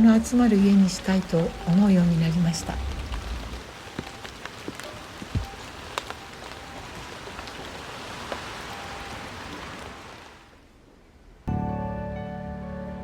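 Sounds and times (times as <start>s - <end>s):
steady rain falling: 0.0s - 11.3s
drops ticking on surfaces: 3.8s - 6.6s.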